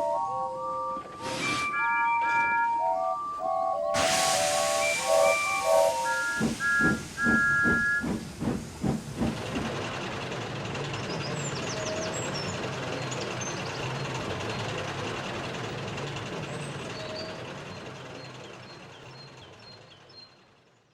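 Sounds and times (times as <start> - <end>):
steady hiss of steam: 4.0 - 9.8
steam locomotive chuffing: 4.0 - 19.8.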